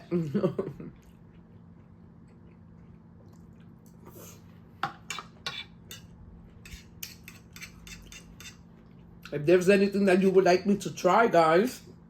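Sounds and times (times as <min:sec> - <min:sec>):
faint steady hum: 0:00.0 - 0:12.0
cutlery clinking on a plate: 0:04.8 - 0:08.6.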